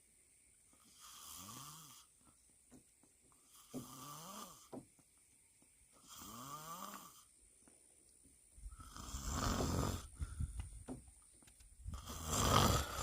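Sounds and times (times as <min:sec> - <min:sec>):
person snoring: 0:08.8 - 0:10.2, 0:11.9 - 0:13.0.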